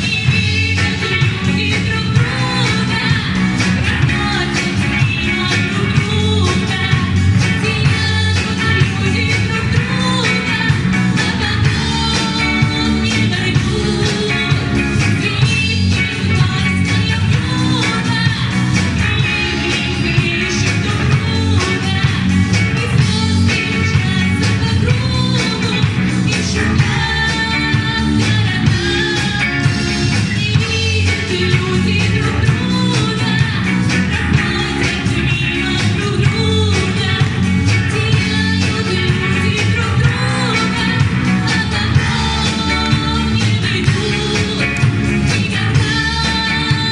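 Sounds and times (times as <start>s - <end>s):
upbeat rock and roll pop song: 0.0s - 46.9s.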